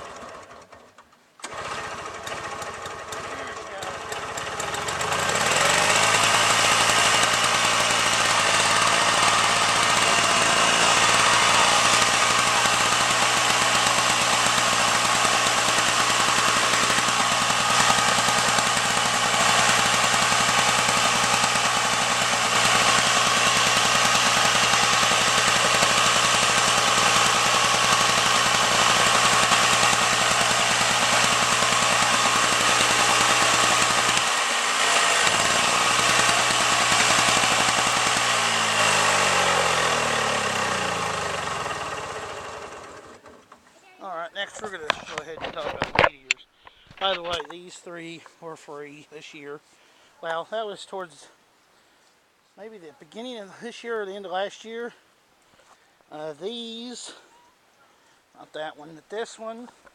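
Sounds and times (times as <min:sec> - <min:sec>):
two-stroke engine running: 0:00.0 - 0:47.6.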